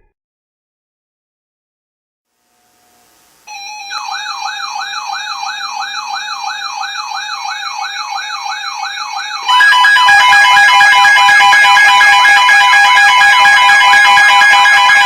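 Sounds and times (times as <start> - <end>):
pulsing beep tones: 3.5 - 15.0
steady alert tone: 3.5 - 15.0
warbling siren-like alarm: 3.5 - 15.0.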